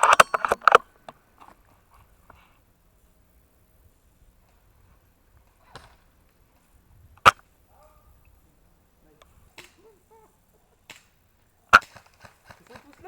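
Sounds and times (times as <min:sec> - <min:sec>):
handling clicks and rustling: 0:00.0 - 0:02.4, 0:11.8 - 0:13.0
airsoft rifle shot: 0:11.7 - 0:12.8.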